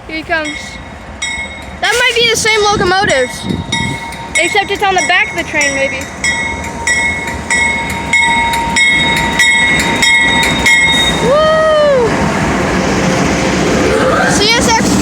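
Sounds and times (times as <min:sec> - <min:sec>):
freight train rumbling past: 0:00.0 - 0:15.0
level crossing bell dinging: 0:03.1 - 0:11.2
person calling woo: 0:11.2 - 0:12.2.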